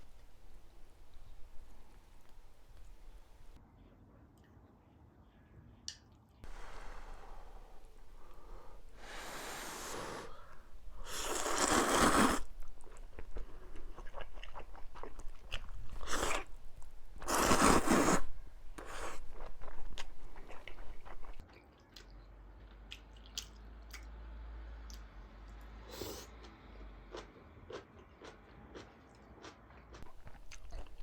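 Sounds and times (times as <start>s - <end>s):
chewing: 0.0s - 3.6s, 6.5s - 24.1s, 26.4s - 31.0s
slurping noodles: 6.5s - 21.4s.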